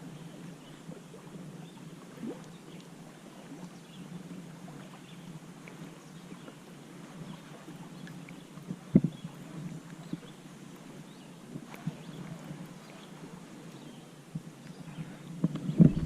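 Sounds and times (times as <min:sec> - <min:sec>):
steady low hum: 0:06.8 - 0:16.0.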